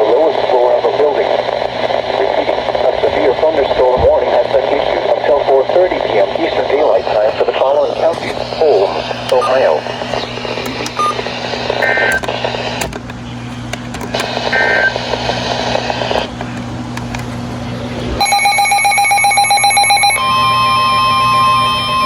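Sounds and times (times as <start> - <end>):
radio hiss: 0.0 - 18.2
steady low hum: 0.0 - 18.8
weather radio alarm tone: 6.1 - 12.2, 18.2 - 22.0
warbling data burst: 7.0 - 11.3
data chirps: 8.6 - 12.2.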